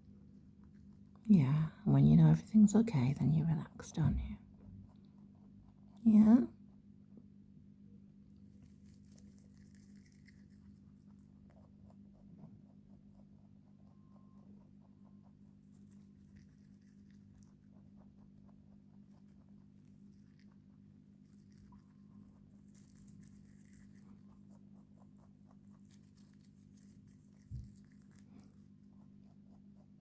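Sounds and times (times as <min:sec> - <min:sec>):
steady low hum: 0:00.0 - 0:30.0
rabbit crunching leaves: 0:08.1 - 0:30.0.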